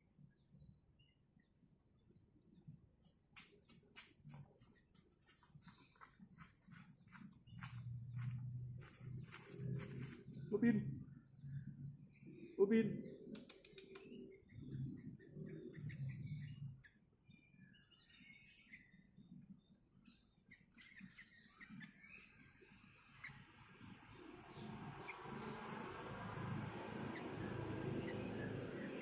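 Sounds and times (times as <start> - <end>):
bird chirping: 0.0 - 29.0
low rumble: 7.4 - 12.0.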